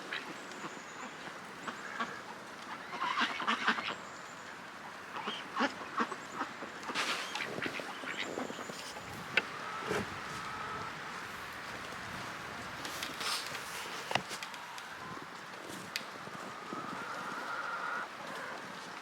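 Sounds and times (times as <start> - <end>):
ducks quacking: 1.6 - 4.0, 4.9 - 14.3.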